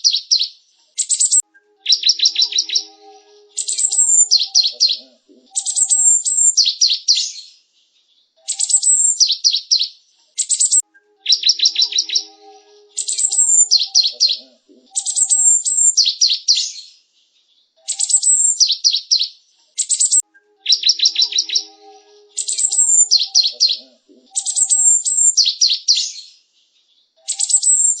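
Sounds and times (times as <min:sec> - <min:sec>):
tit bird singing: 0:01.0 - 0:07.4, 0:08.4 - 0:09.8, 0:10.4 - 0:16.8, 0:17.8 - 0:19.0, 0:19.8 - 0:26.2, 0:27.2 - 0:28.0.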